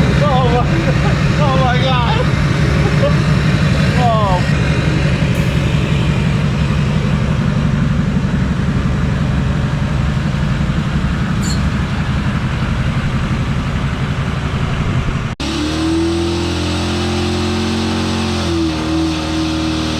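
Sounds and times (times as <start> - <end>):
diesel engine rumble: 0.0 - 15.4
steady held tones: 5.3 - 8.3.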